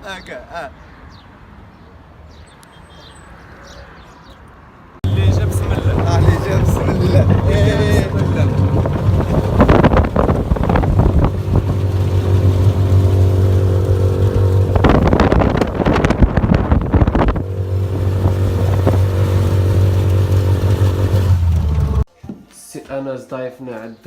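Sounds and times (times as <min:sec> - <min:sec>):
vehicle engine humming: 0:05.0 - 0:22.1.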